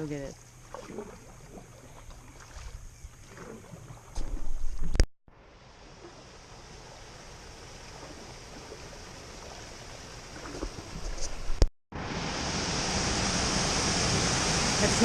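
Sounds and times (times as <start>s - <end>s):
water rushing down a cascade: 12.0s - 15.0s.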